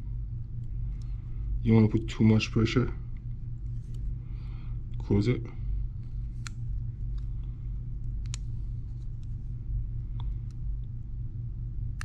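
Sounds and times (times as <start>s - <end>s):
steady low hum: 0.0s - 12.0s
tweezers clicking on connectors: 8.0s - 8.5s.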